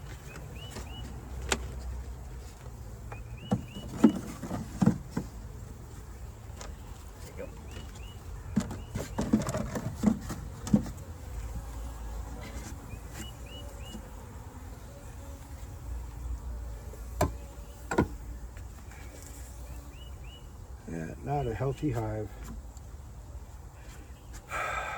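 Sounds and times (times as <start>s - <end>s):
bees buzzing: 0.0s - 24.9s
hive parts knocking: 3.1s - 5.4s, 7.7s - 11.0s.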